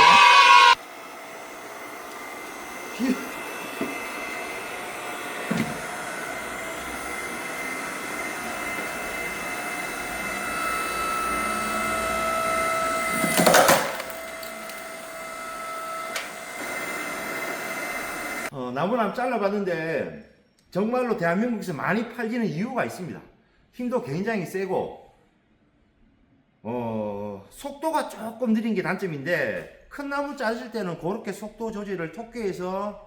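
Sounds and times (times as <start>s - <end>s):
log splitter motor whining: 0.0s - 18.5s
wood splitting with loud crack: 12.7s - 15.0s.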